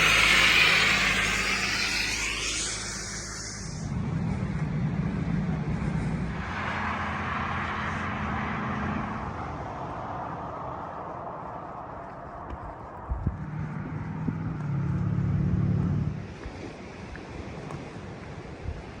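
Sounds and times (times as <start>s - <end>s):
tyre hiss: 0.0s - 3.9s
vehicles passing: 0.0s - 19.0s.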